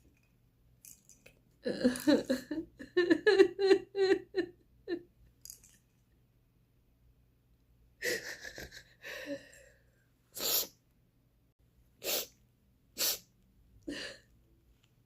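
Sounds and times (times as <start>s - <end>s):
sharp nasal bursts: 10.4s - 10.8s, 12.0s - 12.4s, 13.0s - 13.3s.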